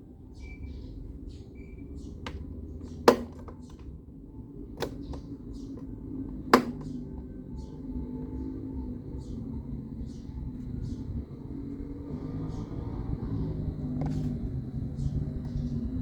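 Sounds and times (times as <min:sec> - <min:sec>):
desk fan humming: 0:00.0 - 0:16.0
fan gearbox clicks: 0:01.6 - 0:04.1, 0:04.7 - 0:07.8.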